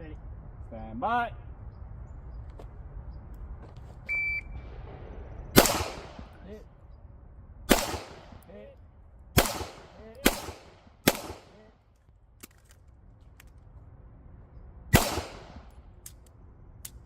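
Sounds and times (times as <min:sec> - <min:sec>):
pistol shots with echo: 0:05.6 - 0:06.5, 0:07.7 - 0:08.5, 0:09.4 - 0:11.7, 0:14.9 - 0:15.7.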